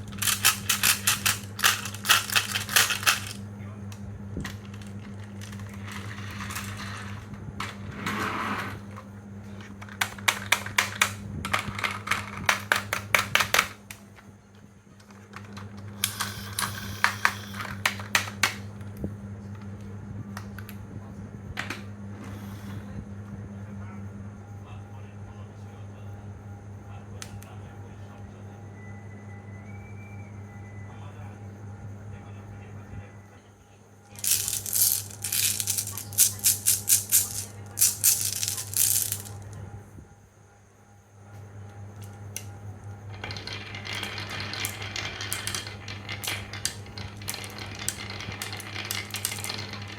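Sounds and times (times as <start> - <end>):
marbles clicking on marble run: 0.0 - 3.4, 4.4 - 7.7, 9.9 - 13.8, 34.2 - 39.5, 43.1 - 49.9
steady low hum: 0.0 - 49.9.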